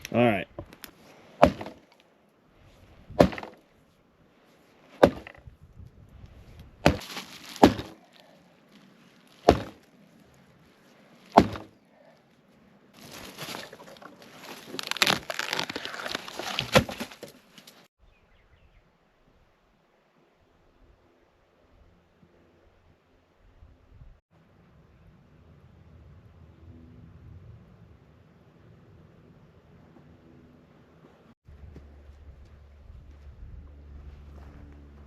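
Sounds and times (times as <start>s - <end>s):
dry wood snapping: 0.0s - 2.1s, 3.2s - 3.6s, 5.0s - 5.4s, 6.8s - 8.2s, 9.3s - 9.9s, 11.3s - 11.8s, 13.0s - 17.9s.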